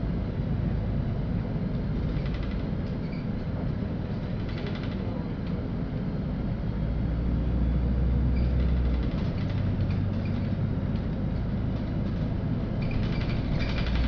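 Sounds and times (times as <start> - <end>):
bus engine and road drone: 0.0 - 14.0.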